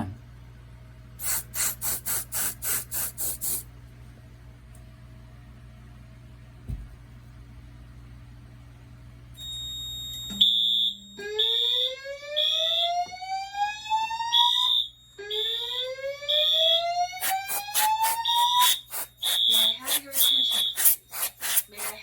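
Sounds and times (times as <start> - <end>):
pulsing alarm horn tone: 11.2 - 20.8.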